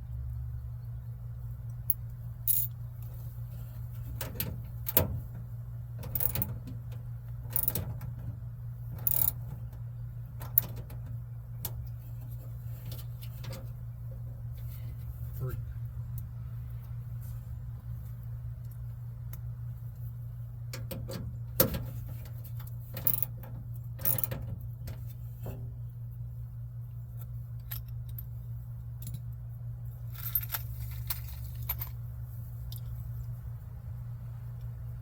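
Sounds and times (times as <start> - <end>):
steady low hum: 0.0 - 35.0
metal tools clinking and rattling: 6.0 - 6.6, 7.5 - 8.0, 9.0 - 9.4, 30.1 - 32.0.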